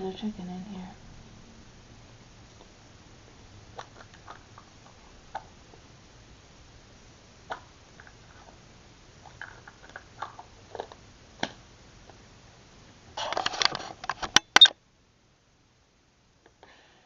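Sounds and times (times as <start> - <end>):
rustling and crackling: 7.4 - 12.2, 12.9 - 14.7.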